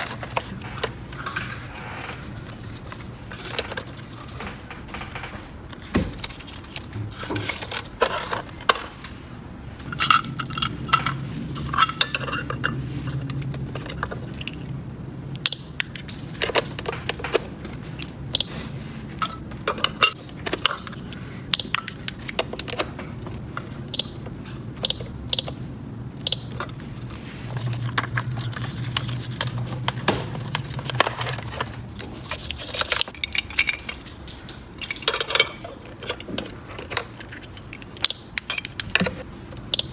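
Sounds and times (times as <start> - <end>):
short high-pitched beeps: 24.0 - 26.6.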